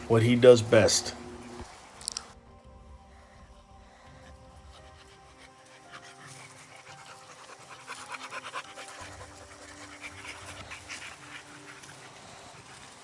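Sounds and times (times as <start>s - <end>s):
dog panting quickly: 4.7s - 13.0s.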